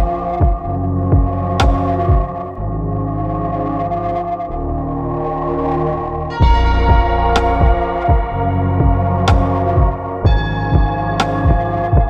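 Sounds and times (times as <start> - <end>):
low kick drum: 0.0 - 2.4, 6.4 - 12.0
sustained synth chords: 0.0 - 12.0.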